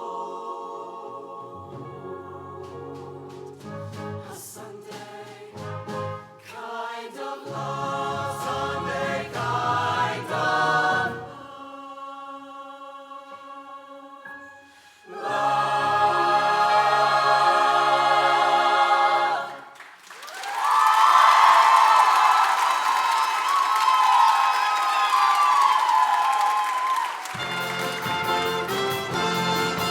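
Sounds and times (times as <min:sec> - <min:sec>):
choir singing with live band: 0:00.0 - 0:14.1, 0:15.1 - 0:19.8.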